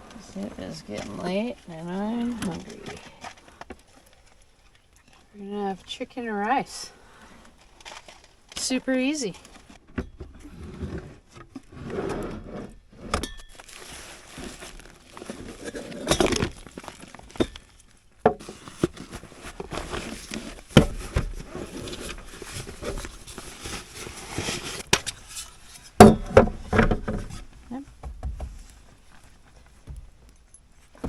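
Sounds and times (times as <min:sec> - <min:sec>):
packaging crinkling: 0:13.5 - 0:25.3.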